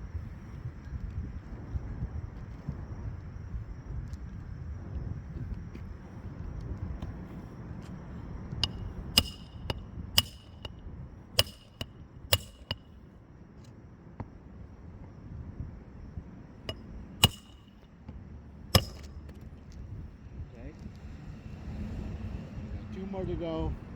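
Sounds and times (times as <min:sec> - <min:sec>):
hammer striking roofing nails: 0:08.6 - 0:10.8, 0:11.4 - 0:12.9, 0:16.7 - 0:17.8, 0:18.8 - 0:19.4.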